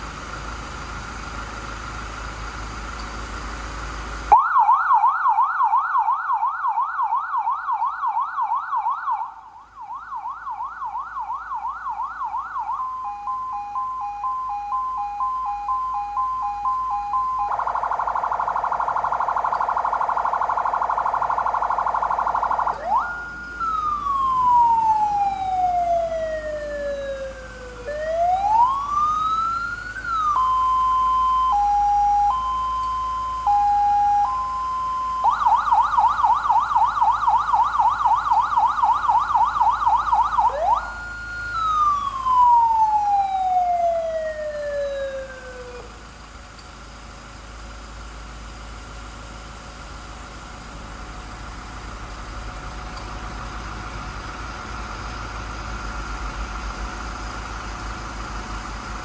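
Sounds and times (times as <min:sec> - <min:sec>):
electronic vehicle siren: 0:04.3 - 0:46.2.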